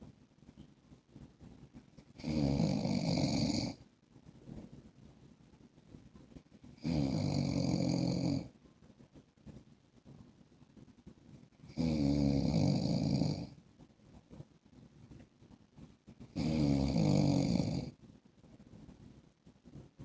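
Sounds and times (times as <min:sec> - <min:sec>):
man snoring: 0:02.2 - 0:03.8, 0:06.8 - 0:08.5, 0:11.7 - 0:13.6, 0:16.4 - 0:18.0.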